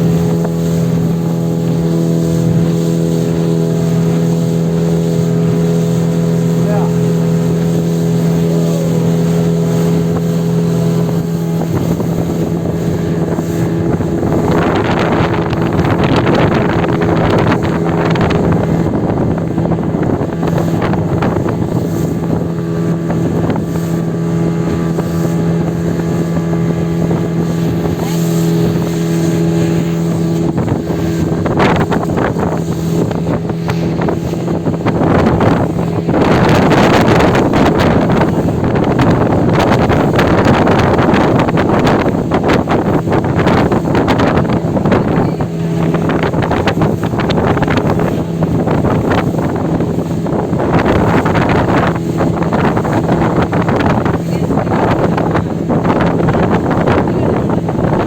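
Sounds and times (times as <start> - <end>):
motorboat engine droning: 0.0 - 58.0
rushing water: 0.0 - 58.0
wind on microphone: 0.0 - 58.0.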